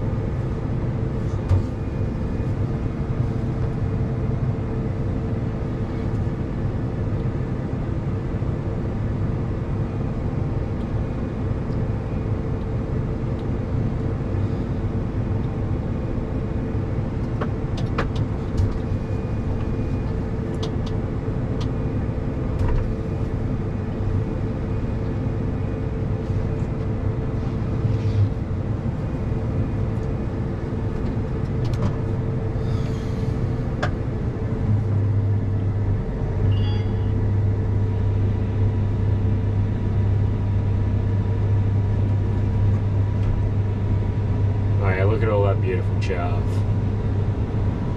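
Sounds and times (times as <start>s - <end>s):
combine harvester engine hum: 0.0s - 47.9s
auger whine: 32.5s - 39.2s.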